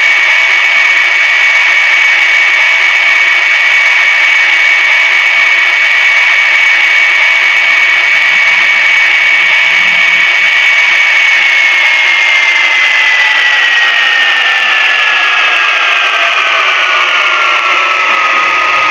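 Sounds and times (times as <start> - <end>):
race car engine whine: 7.6 - 18.9.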